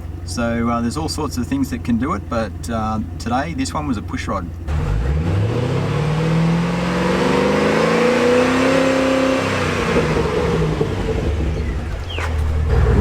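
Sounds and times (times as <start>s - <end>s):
car engine revving: 4.6s - 13.0s.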